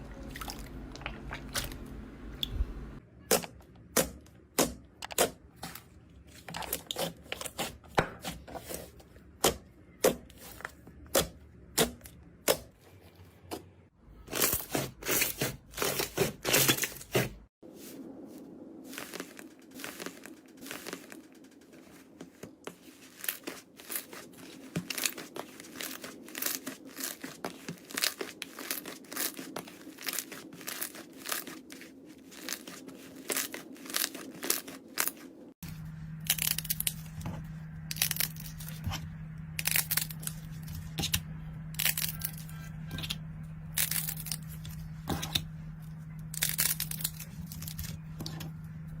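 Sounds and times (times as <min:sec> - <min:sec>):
faint steady hum: 0:00.0 - 0:03.8, 0:17.9 - 0:49.0.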